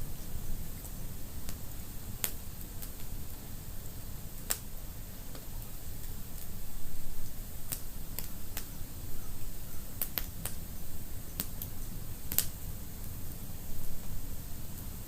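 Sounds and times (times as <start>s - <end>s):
fireplace fire crackling: 0.0s - 15.0s.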